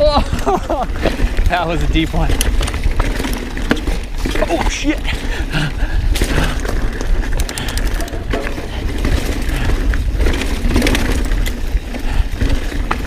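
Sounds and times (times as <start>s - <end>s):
bike rattling: 0.0s - 13.0s
tyres crunching over dirt and rock: 0.0s - 13.0s
wind and ground rumble: 0.0s - 13.0s
sharp clicks: 7.0s - 8.3s.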